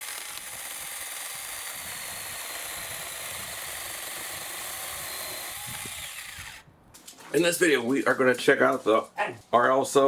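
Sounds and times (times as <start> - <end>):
small motor running: 0.0 - 6.6.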